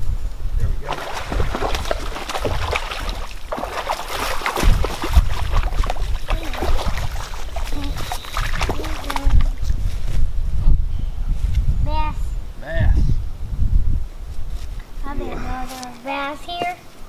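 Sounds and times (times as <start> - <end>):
wind rumble on microphone: 0.0 - 15.6
water sloshing: 0.8 - 10.2.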